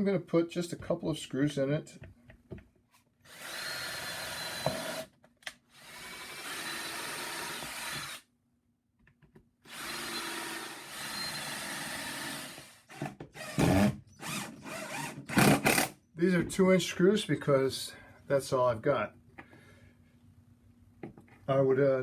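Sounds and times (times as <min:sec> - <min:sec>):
power drill driving screws: 0:03.3 - 0:05.1, 0:05.7 - 0:08.3, 0:09.7 - 0:16.0.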